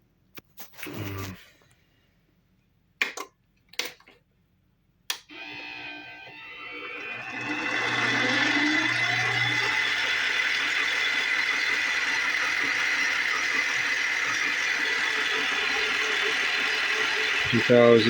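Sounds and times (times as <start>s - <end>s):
lathe spinning with high whine: 5.3s - 18.0s.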